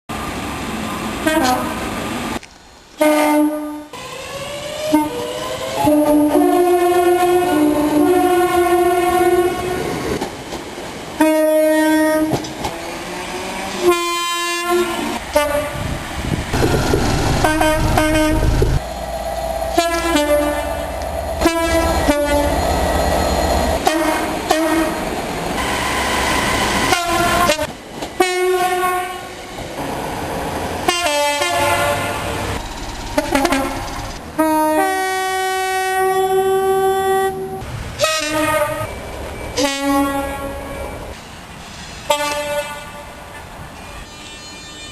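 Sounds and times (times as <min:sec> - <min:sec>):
locomotive air horns two-tone: 0:03.0 - 0:04.0, 0:04.8 - 0:09.9, 0:11.2 - 0:12.4, 0:13.8 - 0:15.9, 0:17.4 - 0:18.8, 0:19.7 - 0:22.6, 0:23.6 - 0:25.0, 0:25.6 - 0:29.4, 0:30.9 - 0:32.6, 0:33.2 - 0:38.9, 0:39.6 - 0:41.1, 0:42.0 - 0:43.2, 0:43.8 - 0:44.9
train clattering on rails: 0:09.6 - 0:13.9, 0:14.8 - 0:34.4
low rumble: 0:16.3 - 0:23.7, 0:32.6 - 0:34.3.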